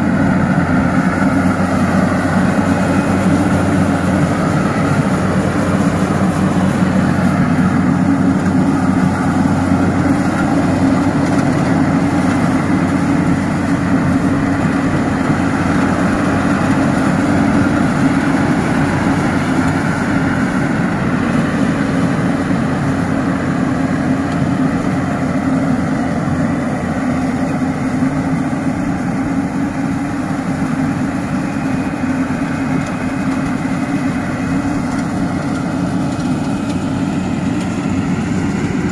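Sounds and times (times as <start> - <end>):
diesel engine droning: 0.0 - 38.9.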